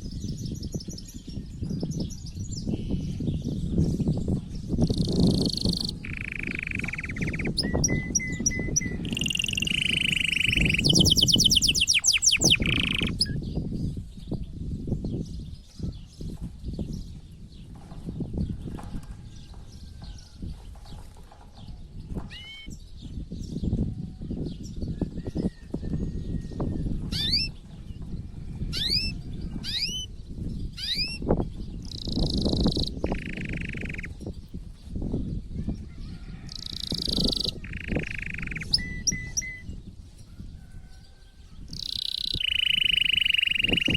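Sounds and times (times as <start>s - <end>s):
canary singing trills: 4.6s - 13.6s, 22.0s - 23.6s, 27.1s - 27.6s, 28.4s - 34.6s, 35.2s - 43.9s
faint bird chirps: 4.9s - 13.4s, 31.9s - 34.3s, 36.2s - 39.8s, 41.7s - 43.9s.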